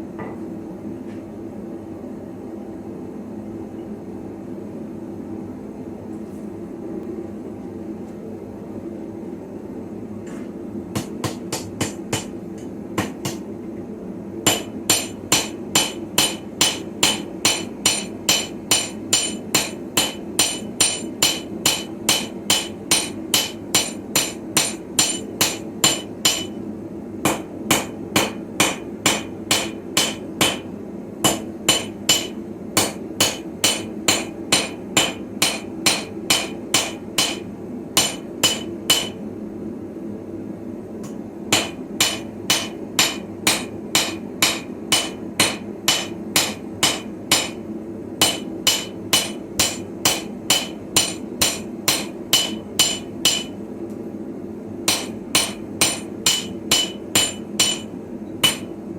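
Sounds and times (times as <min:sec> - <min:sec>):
steady low hum: 0:00.0 - 0:58.9
hammer striking steel on anvil: 0:10.9 - 0:13.4, 0:14.5 - 0:26.6, 0:27.2 - 0:39.2, 0:41.0 - 0:47.6, 0:48.2 - 0:53.6, 0:54.9 - 0:58.8.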